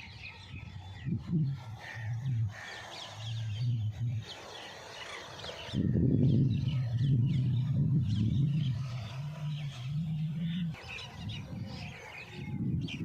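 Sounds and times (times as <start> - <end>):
birds chirping faintly: 0.0 - 13.0
low drone: 5.8 - 11.8.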